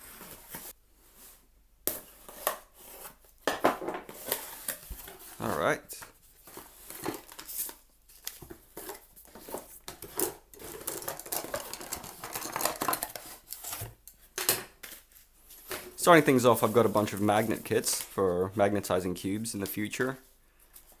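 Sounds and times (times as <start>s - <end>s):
packaging rustling: 4.1s - 18.6s
small items clicking and tapping: 6.8s - 15.0s.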